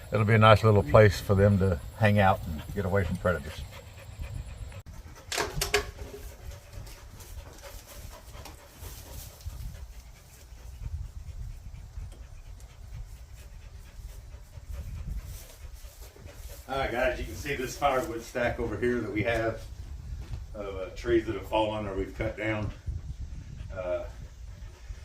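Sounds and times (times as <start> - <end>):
dog panting: 0.0 - 20.0, 20.6 - 25.0.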